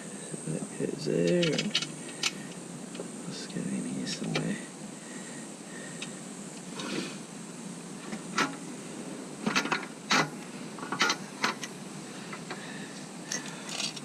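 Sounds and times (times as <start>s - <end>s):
hand tools and bolts clinking: 1.2s - 2.4s, 13.3s - 14.0s.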